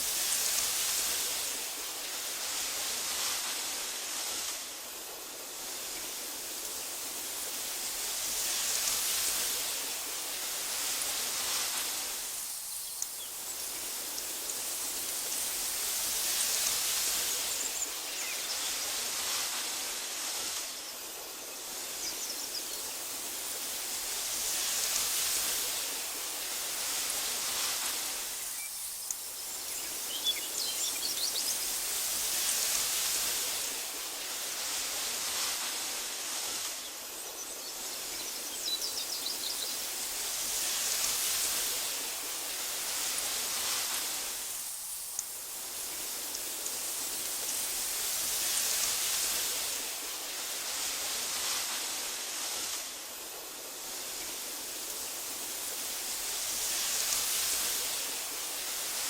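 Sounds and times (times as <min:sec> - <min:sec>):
wind blowing through grass: 0:00.0 - 0:59.0
faint bird chirps: 0:28.3 - 0:32.0.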